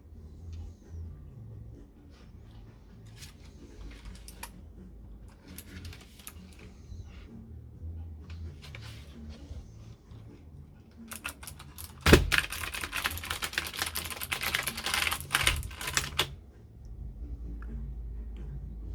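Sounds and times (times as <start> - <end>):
mechanical keyboard typing: 11.1 - 16.3.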